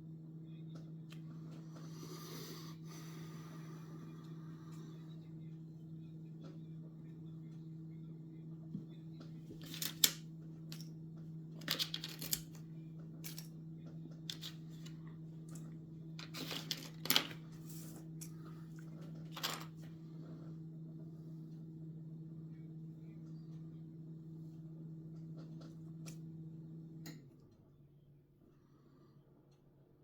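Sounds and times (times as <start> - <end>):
steady low hum: 0.0 - 30.0
plastic parts clicking and rustling: 11.6 - 12.6.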